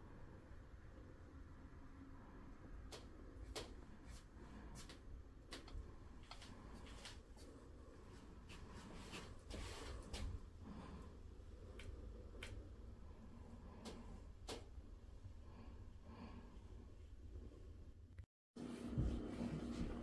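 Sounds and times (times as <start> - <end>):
faint irregular clicks: 4.8 - 7.5, 11.6 - 12.9.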